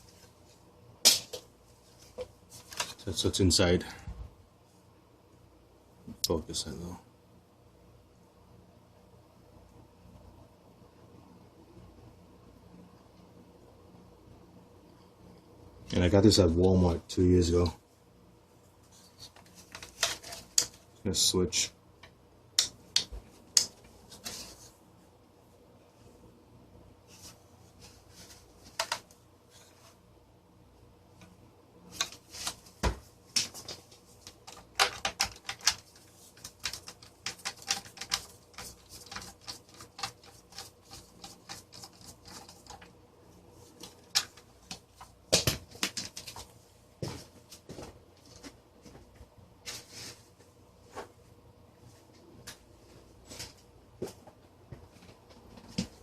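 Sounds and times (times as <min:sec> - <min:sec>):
plastic parts clicking and tapping: 0:28.7 - 0:29.2, 0:33.4 - 0:42.9, 0:43.8 - 0:46.4.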